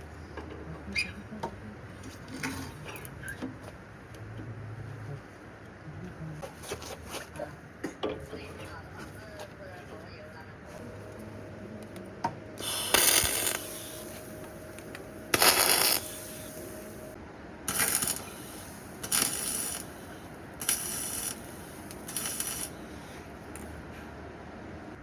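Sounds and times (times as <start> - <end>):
air tool bursts: 12.6 - 22.9.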